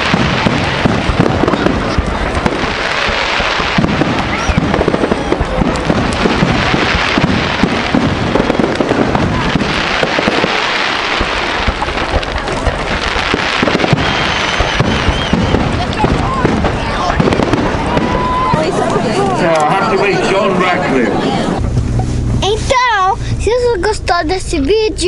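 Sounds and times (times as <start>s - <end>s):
faint firework whistles: 0.0s - 18.6s
fireworks crackling and popping: 0.0s - 24.0s.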